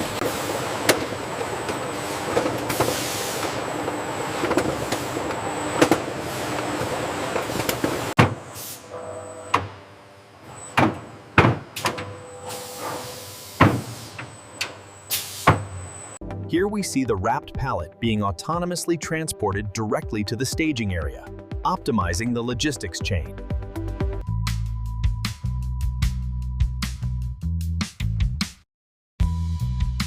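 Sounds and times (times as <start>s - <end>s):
factory machinery clattering: 0.0s - 16.0s
machinery hum: 0.0s - 16.2s.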